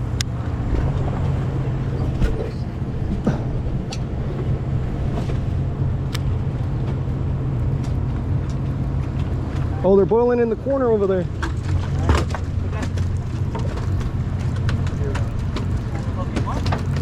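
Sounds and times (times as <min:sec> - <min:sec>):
boat engine drone: 0:00.0 - 0:17.0.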